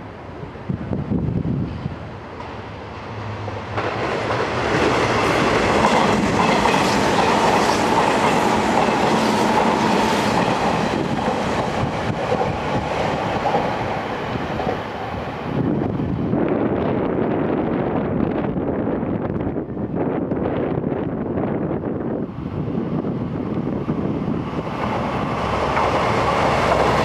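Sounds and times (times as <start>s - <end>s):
train running gear hum: 0.0s - 27.0s
train wheels clattering: 3.6s - 13.8s, 24.6s - 27.0s.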